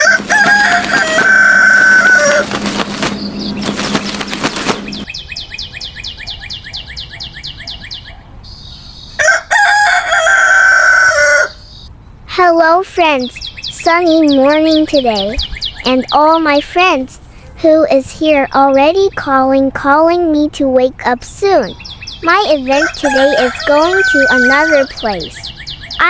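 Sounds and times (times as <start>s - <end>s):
rooster crowing: 0.0s - 2.5s, 9.2s - 11.8s, 22.8s - 25.0s.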